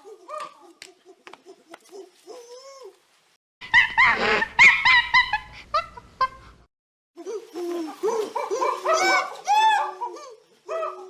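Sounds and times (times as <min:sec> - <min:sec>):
animal calling: 0:07.2 - 0:11.0.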